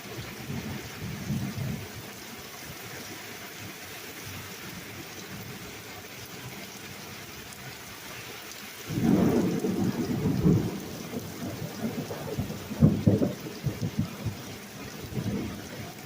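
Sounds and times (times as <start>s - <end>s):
steady rain: 0.0s - 16.0s
thunder rumbling: 8.9s - 16.0s.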